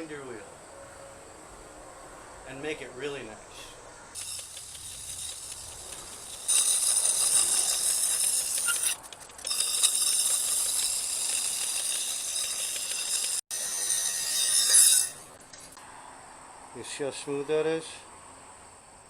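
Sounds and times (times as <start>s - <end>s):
knife on grinding wheel: 4.2s - 15.4s.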